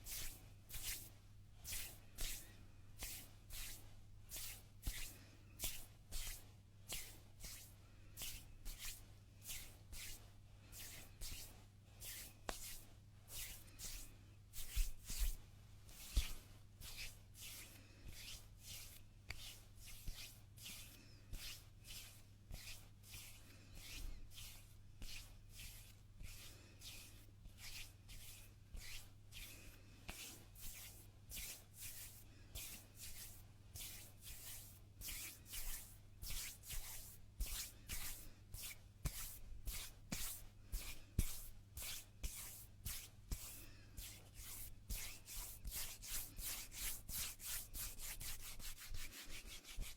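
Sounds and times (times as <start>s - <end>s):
hands rubbing together: 23.8s - 49.9s.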